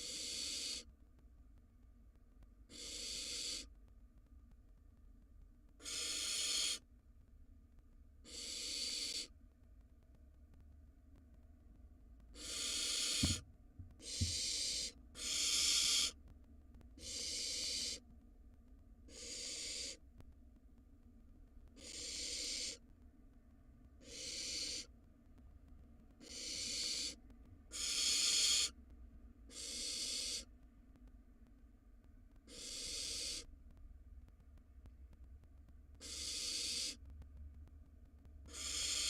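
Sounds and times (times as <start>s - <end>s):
owl nestlings hissing calls: 0.0s - 0.9s, 2.7s - 3.7s, 5.8s - 6.9s, 8.2s - 9.3s, 12.3s - 13.4s, 14.0s - 16.2s, 17.0s - 18.0s, 19.1s - 20.0s, 21.8s - 22.8s, 24.0s - 24.9s, 26.2s - 28.8s, 29.5s - 30.5s, 32.5s - 33.5s, 36.0s - 37.0s, 38.5s - 39.0s.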